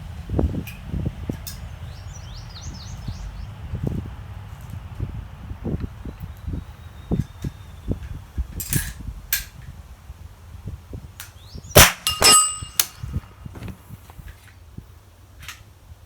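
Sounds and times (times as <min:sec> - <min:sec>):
suppressed gunshots: 0:11.8 - 0:13.0
metallic clang ringing: 0:11.8 - 0:13.4.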